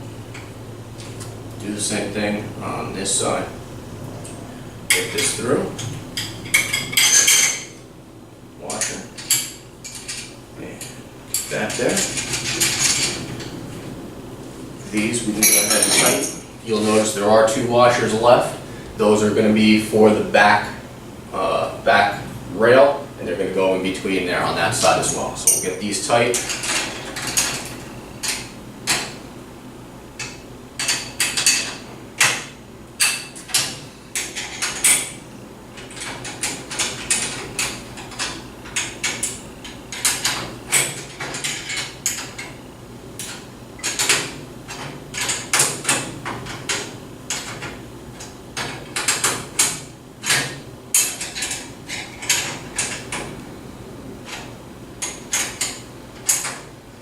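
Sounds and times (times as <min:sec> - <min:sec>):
wrench clicking and clanking on metal: 0:15.4 - 0:16.4, 0:48.6 - 0:53.3, 0:54.3 - 0:56.7.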